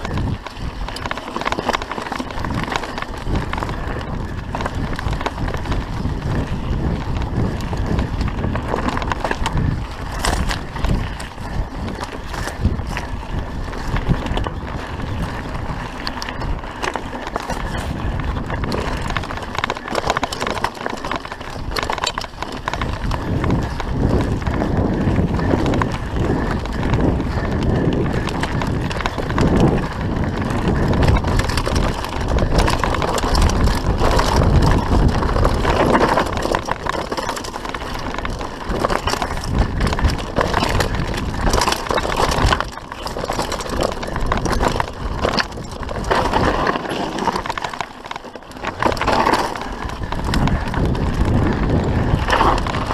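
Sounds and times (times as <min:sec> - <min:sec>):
bike chain and frame rattling: 0:00.0 - 0:52.9
bike tyres rumbling over dirt: 0:00.0 - 0:52.9
wind noise on microphone: 0:00.0 - 0:52.9.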